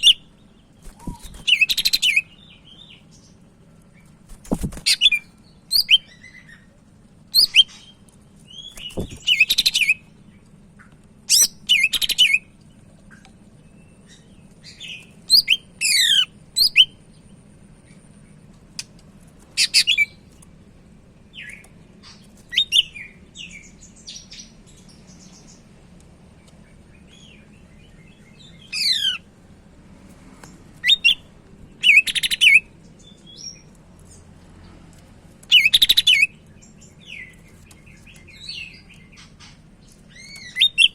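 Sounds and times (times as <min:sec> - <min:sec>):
bird singing chirps and whistles: 0:00.0 - 0:02.9, 0:04.9 - 0:06.5, 0:07.4 - 0:07.8, 0:08.5 - 0:10.0, 0:11.3 - 0:12.5, 0:14.7 - 0:17.0, 0:22.5 - 0:24.3, 0:30.8 - 0:31.2, 0:31.8 - 0:33.6, 0:35.5 - 0:36.3, 0:40.1 - 0:40.9.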